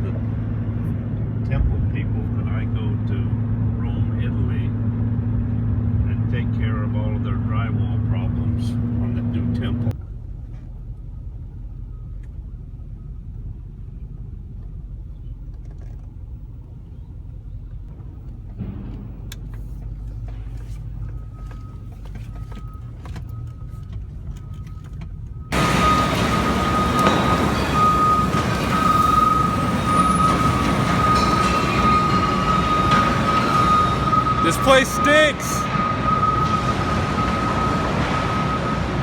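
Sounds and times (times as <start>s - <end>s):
loud noisy background: 25.6s - 39.0s.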